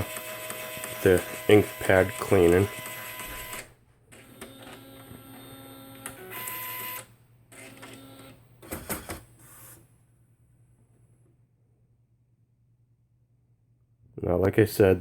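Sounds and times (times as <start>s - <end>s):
printer motor whirring: 0.0s - 9.8s.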